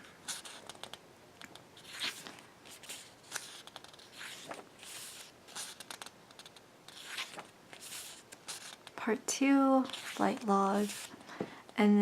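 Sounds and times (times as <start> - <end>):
photo book pages turning: 0.2 - 9.0, 9.8 - 11.2.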